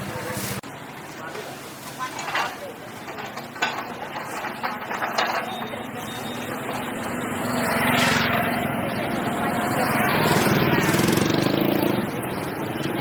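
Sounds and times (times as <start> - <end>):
small engine droning: 5.6 - 13.0.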